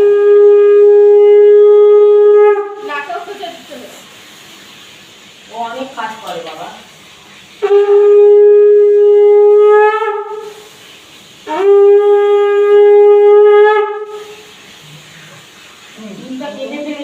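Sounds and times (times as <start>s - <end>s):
conch shell blasts: 0.0s - 3.0s, 7.6s - 10.7s, 11.4s - 14.6s.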